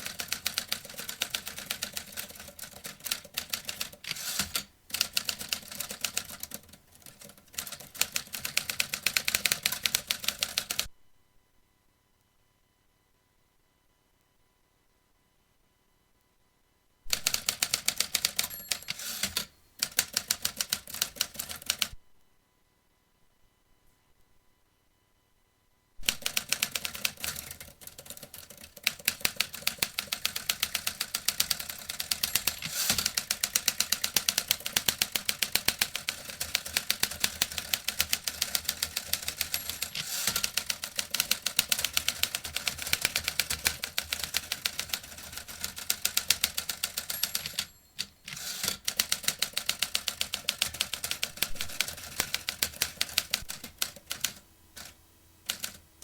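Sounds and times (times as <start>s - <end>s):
typewriter keys clicking: 0.0s - 10.9s, 17.1s - 21.9s, 26.0s - 55.8s.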